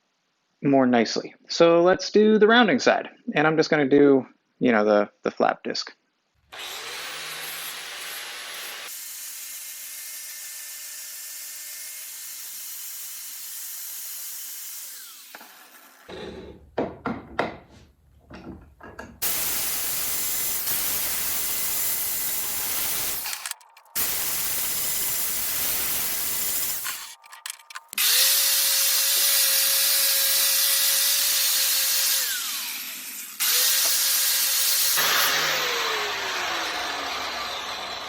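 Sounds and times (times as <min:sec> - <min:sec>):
angle grinder grinding steel: 0:06.6 - 0:16.5, 0:19.2 - 0:38.0
knocks and scraping: 0:16.1 - 0:19.2.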